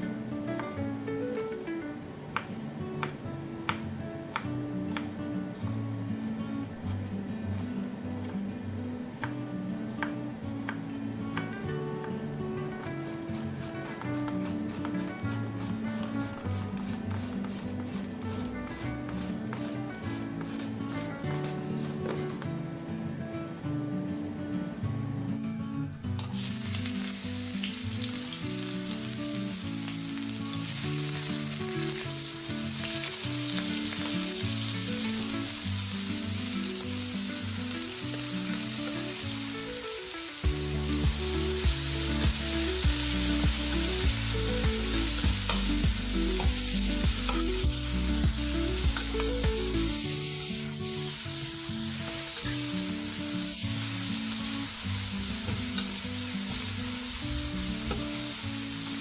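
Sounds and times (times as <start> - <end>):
vegetables sizzling in oil: 26.3 - 59.0
background music with beat: 40.4 - 50.5.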